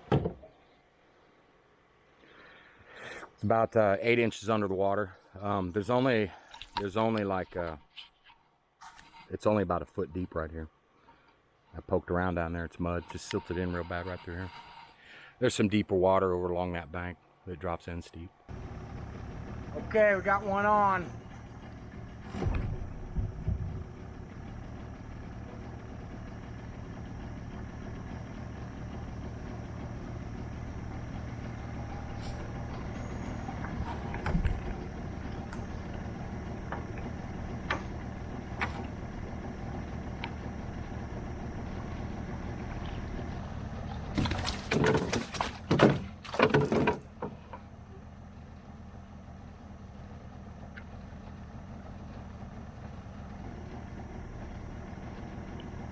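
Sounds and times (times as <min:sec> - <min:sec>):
boat engine idling: 0:18.4 - 0:55.9.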